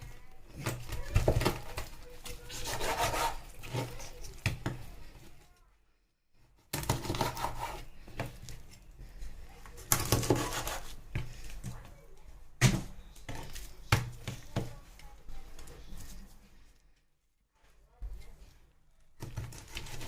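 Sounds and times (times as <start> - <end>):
knife cutting through meat: 2.2 - 4.3, 6.8 - 7.9, 9.9 - 11.0.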